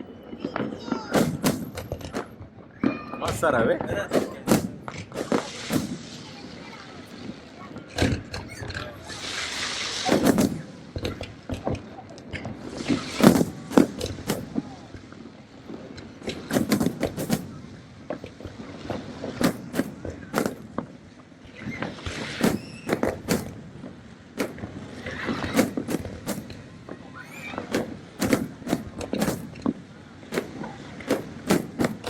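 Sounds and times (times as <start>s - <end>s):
steady background noise: 0.0s - 32.0s.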